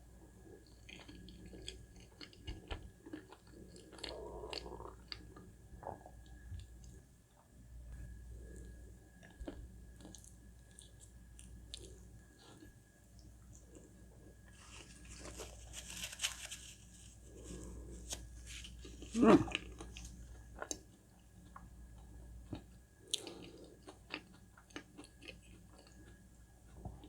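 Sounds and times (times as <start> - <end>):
person chewing petals: 0.6 - 6.7, 13.5 - 27.0.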